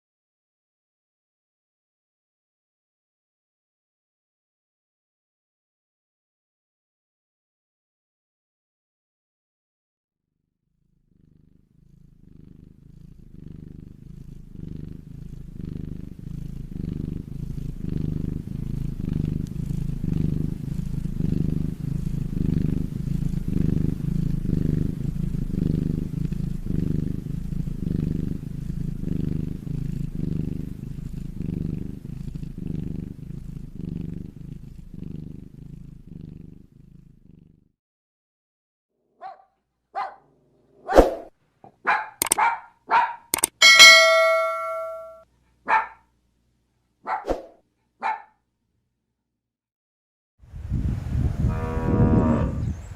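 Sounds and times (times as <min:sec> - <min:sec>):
cat purring: 0:10.8 - 0:37.8, 0:43.2 - 0:45.2.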